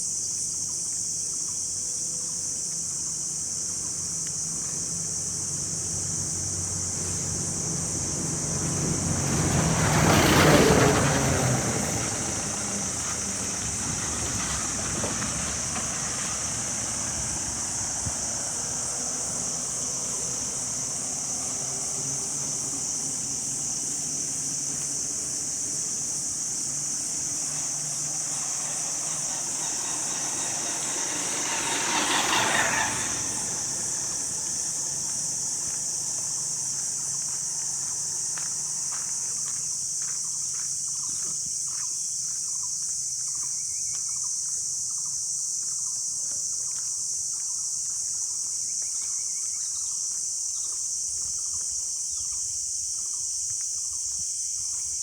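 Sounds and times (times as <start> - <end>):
low vehicle hum: 1.8 - 40.0.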